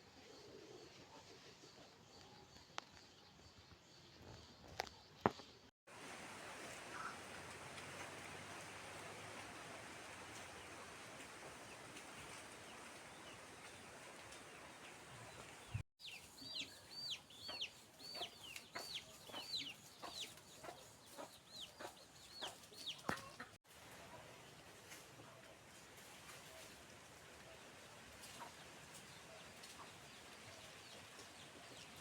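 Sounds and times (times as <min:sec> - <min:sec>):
steady outdoor hiss: 0:05.9 - 0:23.0
chickens calling: 0:14.6 - 0:23.6.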